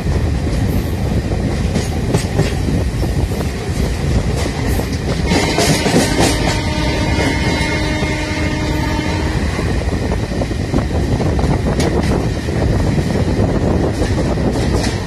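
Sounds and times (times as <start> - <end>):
train rumbling on rails: 0.0 - 15.0.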